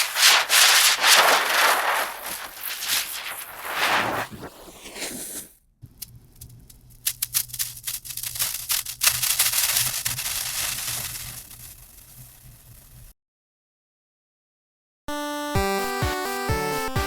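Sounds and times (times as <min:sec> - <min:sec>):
fireworks crackling: 0:00.0 - 0:05.5, 0:09.0 - 0:13.1.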